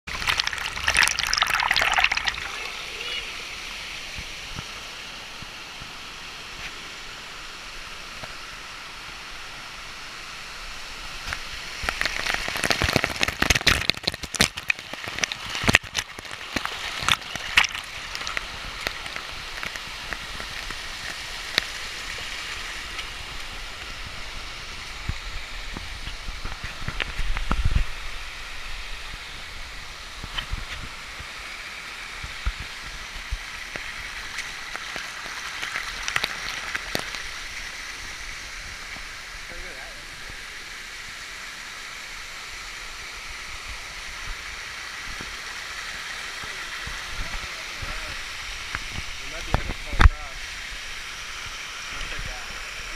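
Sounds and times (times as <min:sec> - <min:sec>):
waterfall rushing: 0:00.1 - 0:52.9
crackling with sharp clicks: 0:11.3 - 0:21.8.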